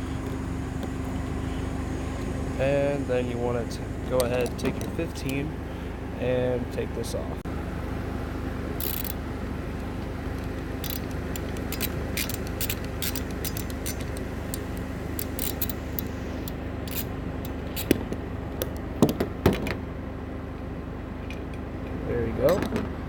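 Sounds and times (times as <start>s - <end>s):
car idling hum: 0.0s - 23.0s
socket ratchet clicking: 8.8s - 9.2s, 10.4s - 16.1s, 16.9s - 18.0s.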